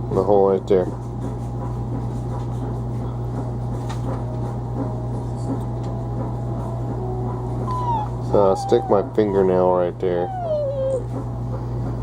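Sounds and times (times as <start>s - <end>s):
steady low hum: 3.7s - 12.0s.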